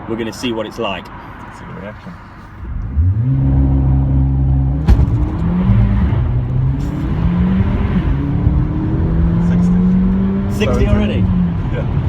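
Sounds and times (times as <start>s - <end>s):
car engine revving: 2.6s - 12.0s
sharp thump: 4.8s - 5.9s.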